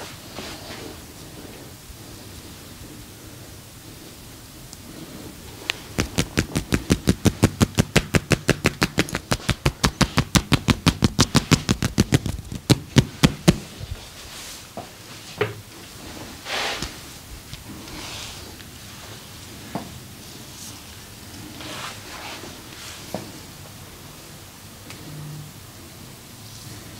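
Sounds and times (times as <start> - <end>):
hands slapping body rhythmically: 5.7 - 13.7
knock: 6.0 - 13.6.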